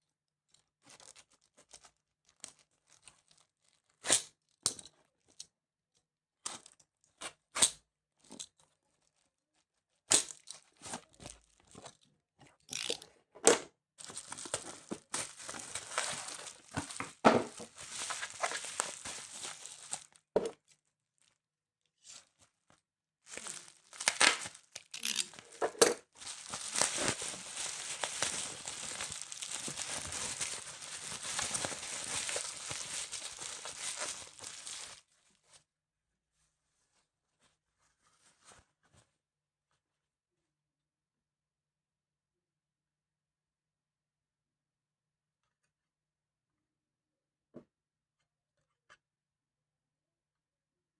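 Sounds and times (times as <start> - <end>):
packaging clicks and snaps: 12.7 - 13.0, 23.3 - 25.6, 26.3 - 35.0
packaging crinkling and tearing: 12.7 - 13.0, 14.0 - 20.2, 23.3 - 35.1.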